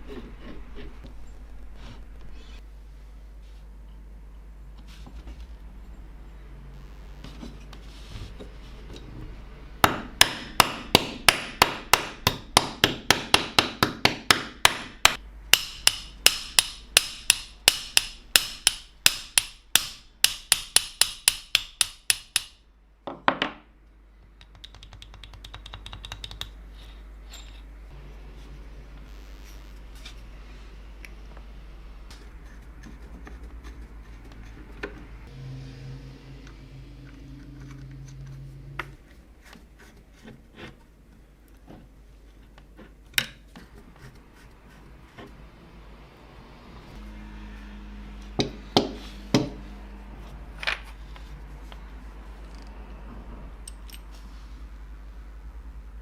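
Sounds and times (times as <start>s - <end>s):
hammer tapping metal: 9.8s - 22.6s.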